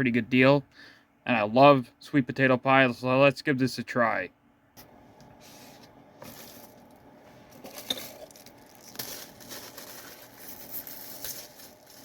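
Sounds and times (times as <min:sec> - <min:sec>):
packaging crinkling and tearing: 0:07.8 - 0:12.0.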